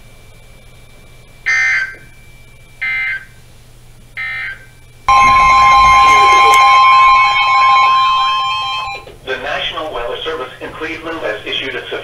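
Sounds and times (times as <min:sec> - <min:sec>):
data tone bursts: 0:05.1 - 0:09.1
steady alert tone: 0:05.1 - 0:09.1.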